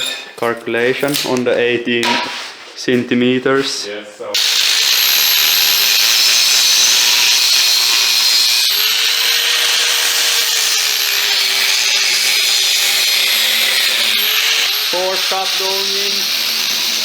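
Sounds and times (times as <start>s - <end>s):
power saw cutting steel pipe: 4.4s - 17.0s.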